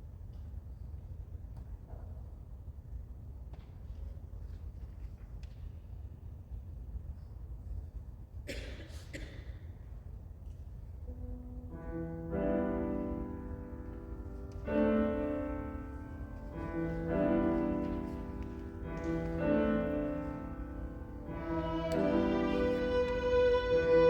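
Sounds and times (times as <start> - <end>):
piano playing slow chords: 11.1 - 24.0.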